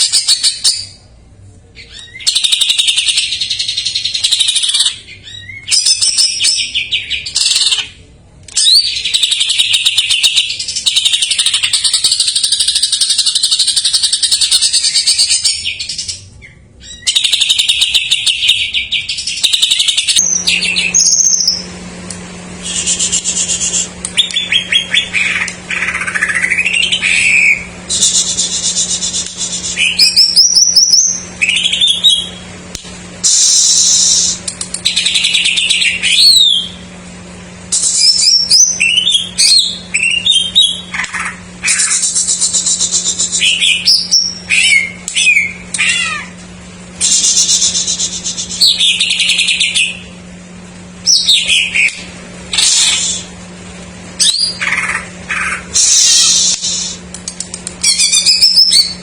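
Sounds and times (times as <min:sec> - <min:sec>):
bird singing varied song: 0:01.8 - 0:07.9, 0:08.5 - 0:21.7, 0:24.1 - 0:32.4, 0:33.6 - 0:36.8, 0:37.8 - 0:46.2, 0:47.1 - 0:50.1, 0:51.0 - 0:52.1, 0:54.2 - 0:56.6, 0:57.8 - 0:59.0
low hum: 0:13.6 - 0:59.0.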